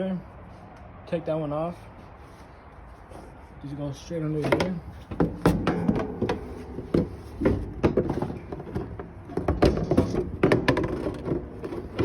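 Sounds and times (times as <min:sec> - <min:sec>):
plastic parts knocking and clicking: 0:04.4 - 0:12.0.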